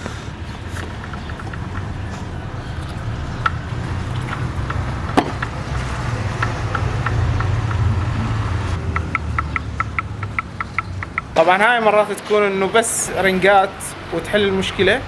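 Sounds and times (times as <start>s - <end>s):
piston slap knocks: 4.6s - 5.6s.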